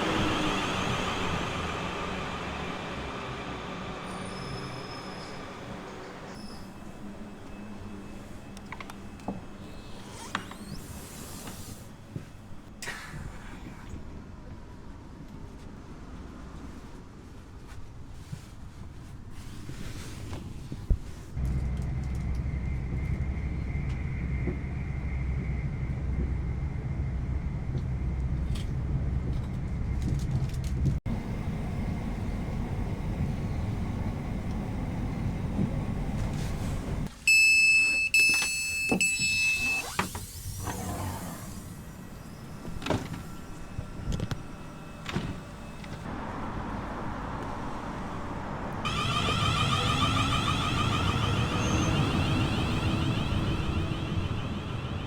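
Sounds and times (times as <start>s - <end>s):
train hum inside carriage: 0.0s - 37.4s, 38.2s - 55.0s
loud whine: 48.8s - 55.0s
high steady tone: 48.9s - 55.0s.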